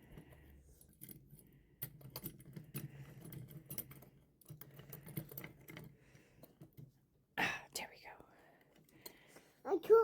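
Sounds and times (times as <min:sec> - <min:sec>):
small parts clicking and clinking: 0:00.0 - 0:07.1.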